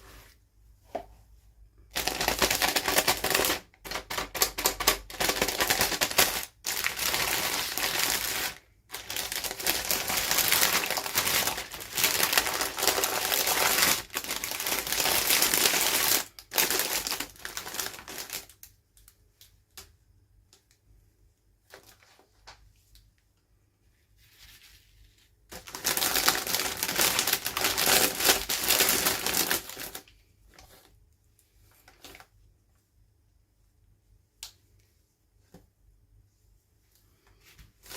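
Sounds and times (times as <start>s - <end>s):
plastic packaging crinkling: 1.9s - 19.1s, 25.5s - 30.9s.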